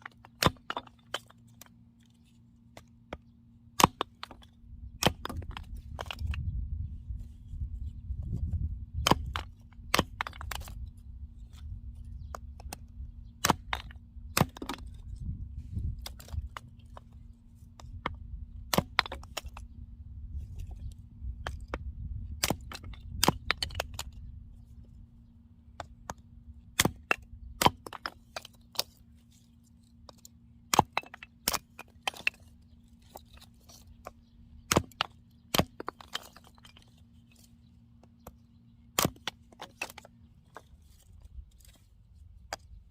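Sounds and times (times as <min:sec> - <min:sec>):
axe splitting wood cracks: 0:00.0 - 0:01.7, 0:03.8 - 0:06.4, 0:09.0 - 0:10.8, 0:13.4 - 0:15.0, 0:16.0 - 0:17.0, 0:17.8 - 0:19.6, 0:21.4 - 0:24.2, 0:25.8 - 0:29.0, 0:30.1 - 0:33.9, 0:34.6 - 0:37.5, 0:38.2 - 0:41.8.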